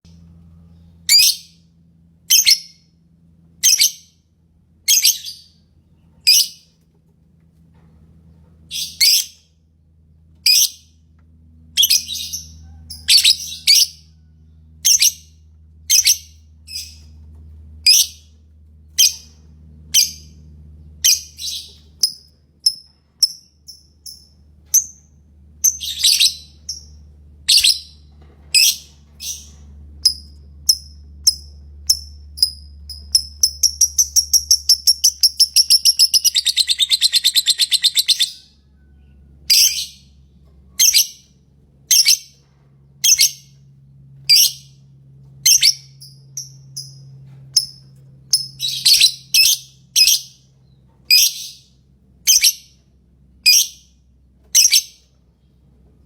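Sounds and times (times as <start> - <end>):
faint low hum: 0.0 - 56.0
bird shrill chirps: 33.2 - 38.6.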